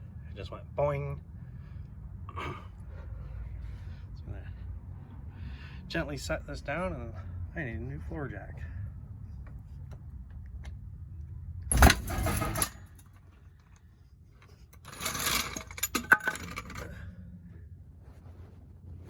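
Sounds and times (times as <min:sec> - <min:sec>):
metal clattering and clanks: 0:11.7 - 0:13.8, 0:14.5 - 0:17.1.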